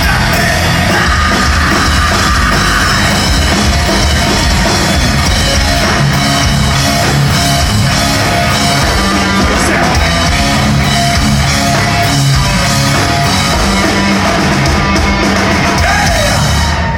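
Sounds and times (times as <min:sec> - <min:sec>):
drum kit: 0:00.0 - 0:16.9
electric guitar: 0:00.0 - 0:16.9
hard rock music: 0:00.0 - 0:16.9.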